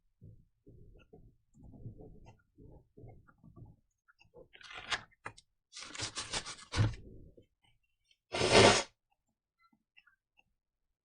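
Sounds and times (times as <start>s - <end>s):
handling scrapes: 8.3s - 8.9s.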